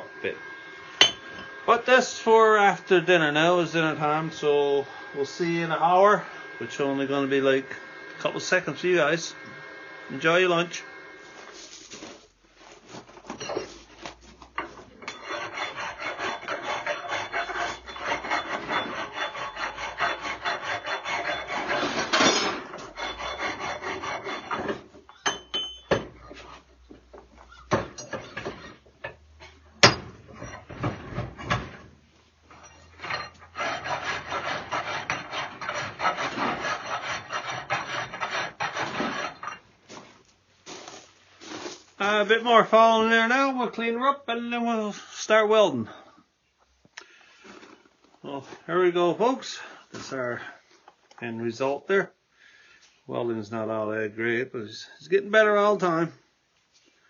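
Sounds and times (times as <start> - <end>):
file scraping metal: 0.0 - 11.2, 14.5 - 26.7, 27.6 - 31.9, 32.5 - 39.7
sharp metal knocks: 1.0 - 1.5, 29.8 - 31.6.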